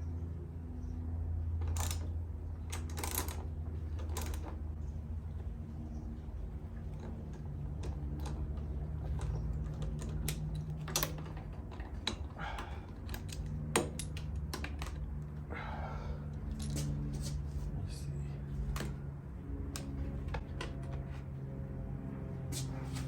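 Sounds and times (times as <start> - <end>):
steady low hum: 0.0 - 23.0
metal parts and tools clicking: 7.0 - 15.2.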